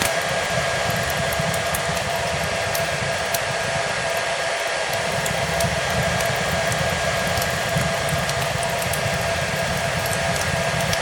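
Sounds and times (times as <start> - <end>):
fireplace crackling: 0.0 - 11.0
hair dryer running: 0.0 - 11.0.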